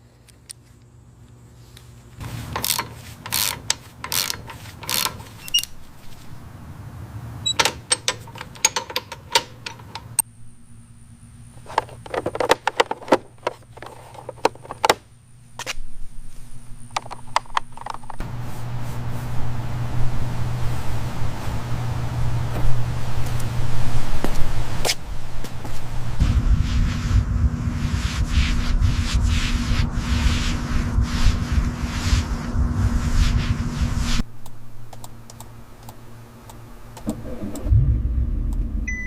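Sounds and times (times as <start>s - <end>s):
low steady hum: 0.0s - 39.0s
faint high whine: 29.3s - 39.0s.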